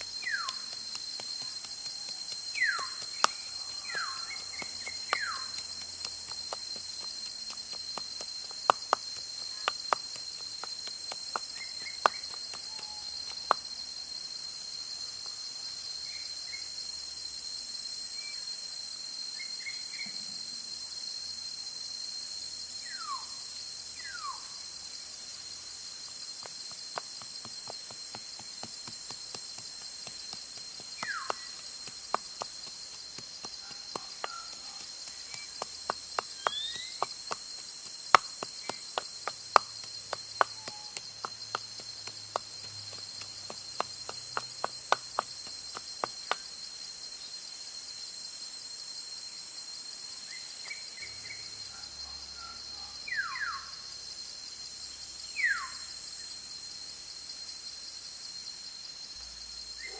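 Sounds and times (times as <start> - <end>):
hiss: 0.0 - 51.5
insects droning: 0.0 - 59.9
falling bird whistles: 36.4 - 37.1.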